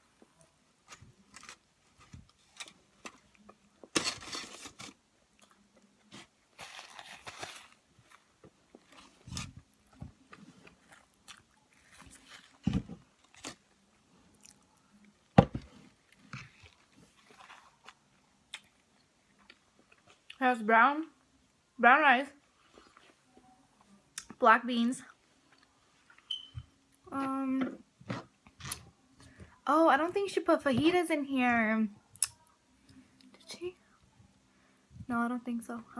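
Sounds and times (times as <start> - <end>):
person chewing food: 9.7 - 12.6, 14.3 - 15.2.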